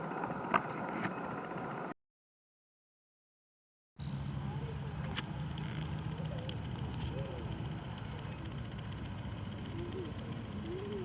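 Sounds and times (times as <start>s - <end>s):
steady low hum: 4.0s - 11.0s.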